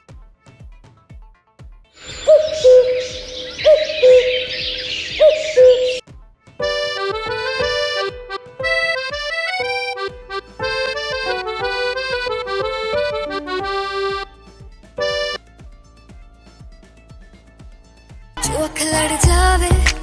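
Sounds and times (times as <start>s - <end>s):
accordion-like ringtone tune: 6.6s - 15.4s.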